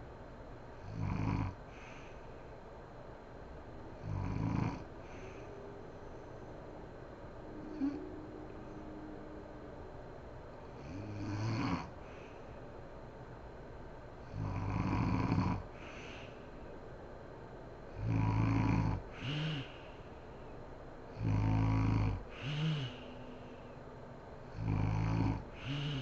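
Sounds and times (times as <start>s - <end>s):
woman snoring: 0.8s - 2.0s, 4.0s - 5.5s, 7.6s - 8.1s, 10.8s - 12.3s, 14.3s - 16.4s, 17.9s - 20.0s, 21.2s - 23.5s, 24.5s - 26.0s.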